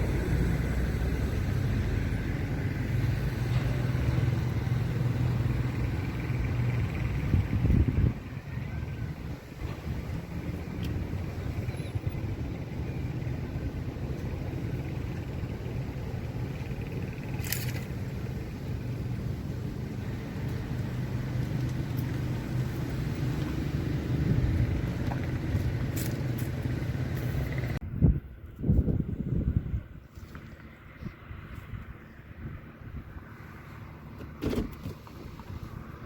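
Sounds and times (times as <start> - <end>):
car engine humming: 0.0 - 27.8
road noise: 0.0 - 36.0.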